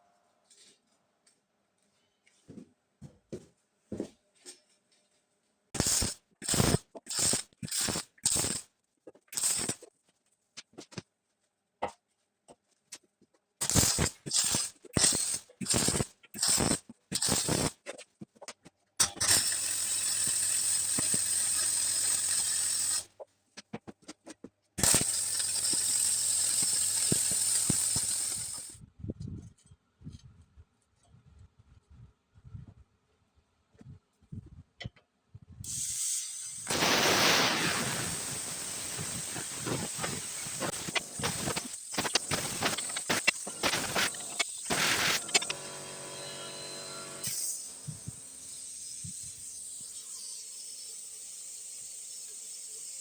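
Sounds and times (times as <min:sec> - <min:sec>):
arc welding crackling: 0:05.8 - 0:08.6, 0:09.3 - 0:09.9, 0:13.6 - 0:17.8, 0:19.0 - 0:23.1, 0:24.8 - 0:28.8, 0:35.7 - 0:48.4.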